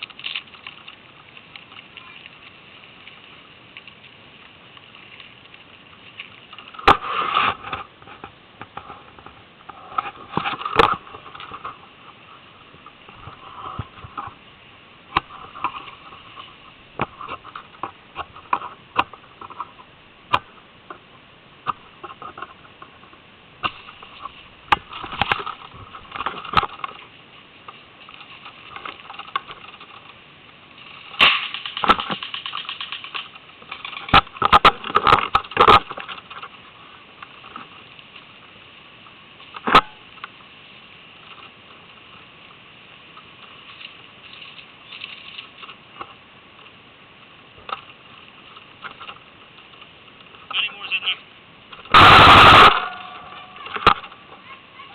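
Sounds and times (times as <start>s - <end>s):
sharp crack: 0.0s - 14.4s, 15.0s - 21.0s, 21.6s - 38.2s, 39.4s - 40.4s, 47.6s - 54.6s
airsoft gun shots: 51.9s - 53.3s.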